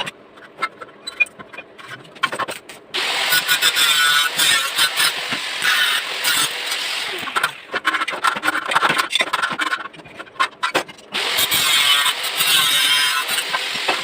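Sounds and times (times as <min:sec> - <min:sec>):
metal parts scraping and clattering: 0:00.0 - 0:02.8, 0:07.2 - 0:11.7.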